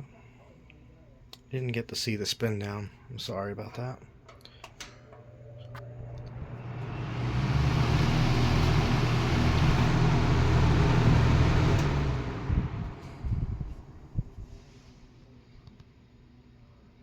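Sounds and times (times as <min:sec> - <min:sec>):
box fan humming with rushing air: 0:04.8 - 0:15.3.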